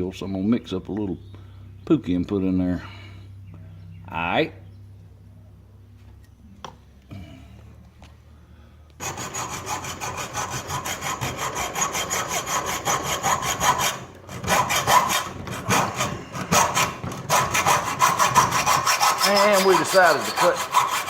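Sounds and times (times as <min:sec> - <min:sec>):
rapid sawing strokes: 0:09.0 - 0:21.0.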